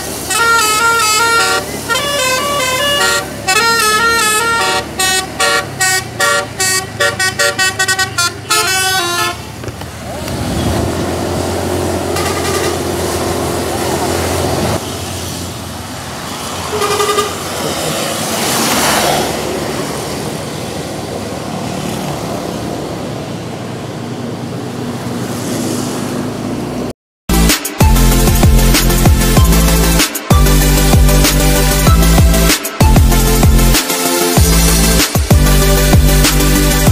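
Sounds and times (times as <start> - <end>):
tyres hissing on wet road: 0.0 - 8.0, 8.9 - 26.9, 27.6 - 36.9
musical bus horn: 0.0 - 9.6, 11.8 - 14.8, 16.6 - 17.9, 27.3 - 36.9
vehicle passing: 0.0 - 26.9
bus engine running: 0.0 - 36.9.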